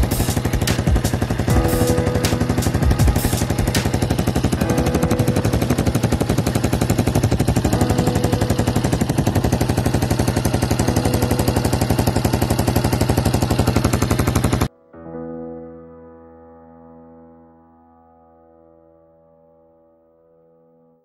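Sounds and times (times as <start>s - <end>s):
motorcycle engine idling: 0.0s - 14.7s.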